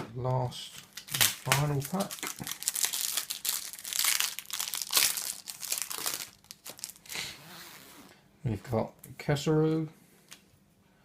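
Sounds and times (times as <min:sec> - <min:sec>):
plastic wrapper crinkling: 0:00.7 - 0:07.1.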